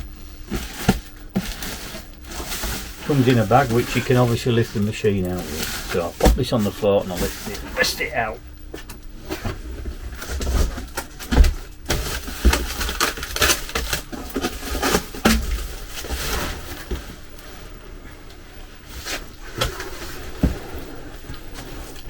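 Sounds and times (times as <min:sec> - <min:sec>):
plastic packaging rustling: 0:00.4 - 0:08.3, 0:09.4 - 0:17.4.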